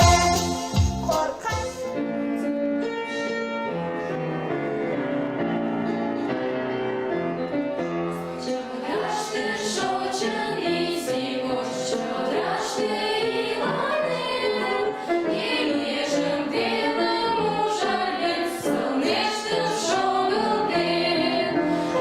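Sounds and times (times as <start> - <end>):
instrumental music with chords: 0.0 - 8.2.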